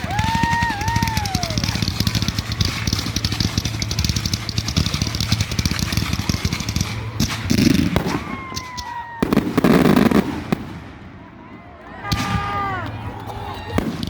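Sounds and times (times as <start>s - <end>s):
falling firework whistle: 0.0s - 2.5s, 7.6s - 10.4s
fireworks crackling: 0.0s - 14.0s.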